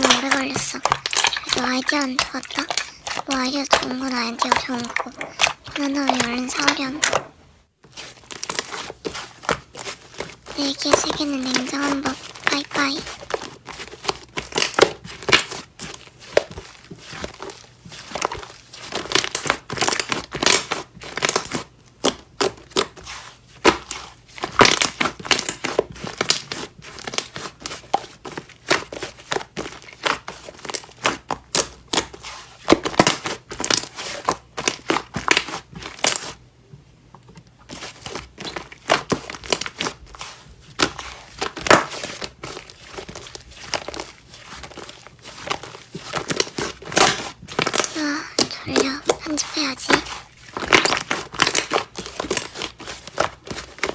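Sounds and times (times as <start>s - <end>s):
slime squeezed crackling and popping: 0.0s - 7.1s, 9.4s - 27.4s.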